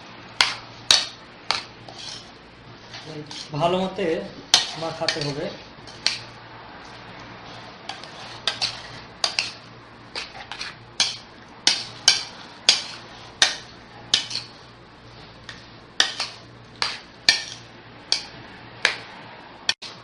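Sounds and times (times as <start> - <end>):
utensil clinking against dish: 10.2 - 14.6.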